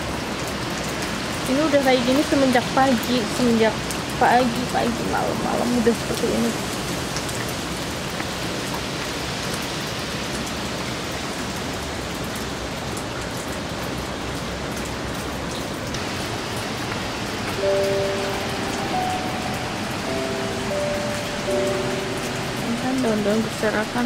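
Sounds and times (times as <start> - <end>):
heavy rain and wind: 0.0 - 24.0
held musical notes: 16.0 - 24.0.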